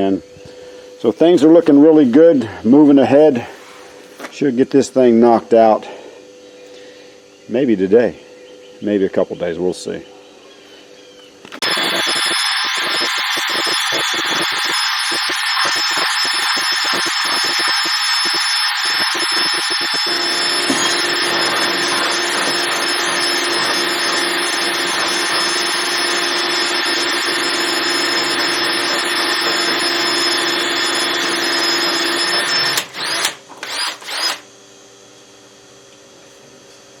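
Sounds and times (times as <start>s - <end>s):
handheld power tool running: 11.5s - 34.5s.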